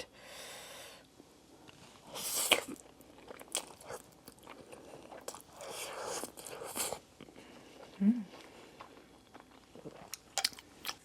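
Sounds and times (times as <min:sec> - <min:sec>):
chewing noodles: 0:01.6 - 0:11.0.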